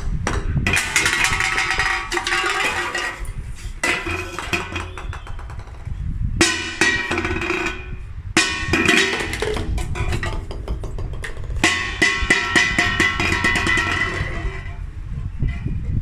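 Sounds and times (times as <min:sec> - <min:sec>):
steady low hum: 0:02.9 - 0:16.0
golf ball bouncing on hard surface: 0:04.0 - 0:15.0.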